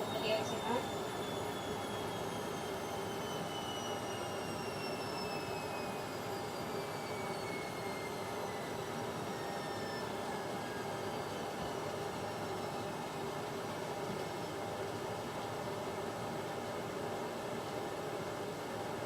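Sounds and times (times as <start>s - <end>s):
high motor whine: 0.0s - 15.2s.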